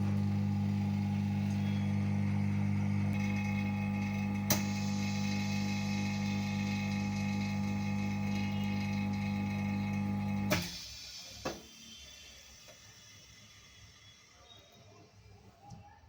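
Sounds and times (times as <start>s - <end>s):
electric machine hum: 0.0s - 10.8s.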